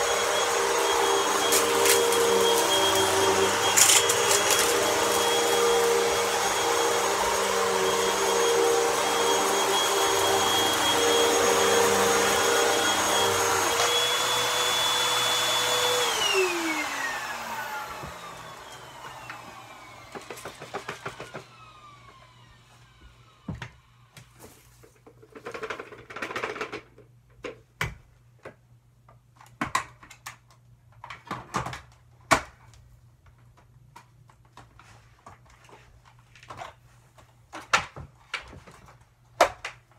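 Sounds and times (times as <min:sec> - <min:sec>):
vacuum cleaner running: 0:00.0 - 0:24.1
rustling handling sounds: 0:00.4 - 0:07.0.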